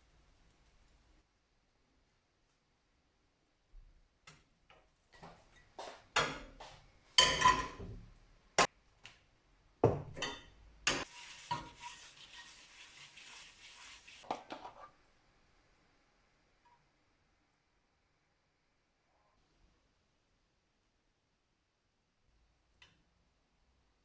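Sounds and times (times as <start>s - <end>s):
dishes and utensils clinking: 5.5s - 8.0s, 9.9s - 12.0s.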